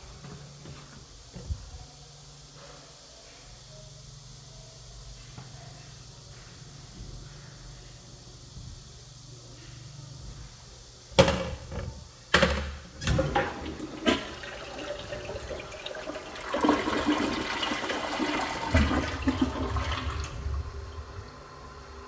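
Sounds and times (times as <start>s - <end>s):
toilet water rushing: 13.0s - 22.0s.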